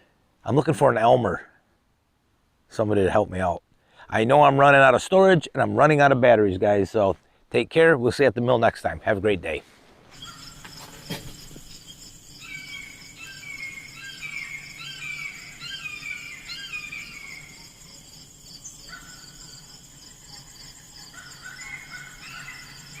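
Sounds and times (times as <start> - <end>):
insects trilling: 10.1 - 23.0
songbird chirping: 10.1 - 23.0.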